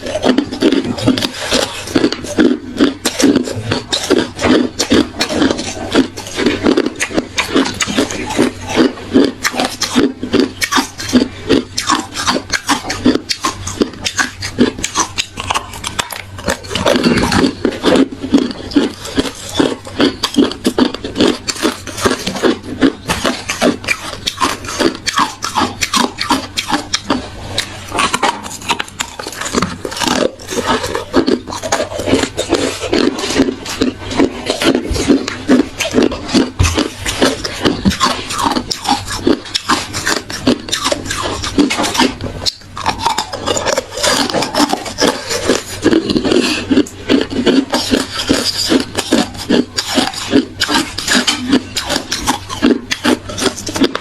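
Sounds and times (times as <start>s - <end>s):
ice being chewed: 0.0s - 54.0s.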